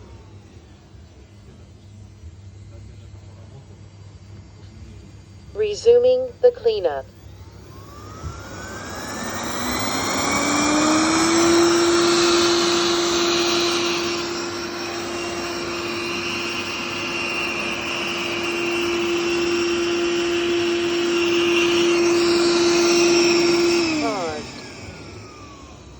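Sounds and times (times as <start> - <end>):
robot vacuum motor whine: 7.2 - 25.9.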